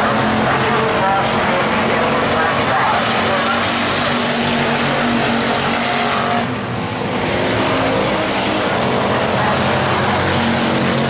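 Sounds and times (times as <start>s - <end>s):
stock car engines racing: 0.0s - 11.0s.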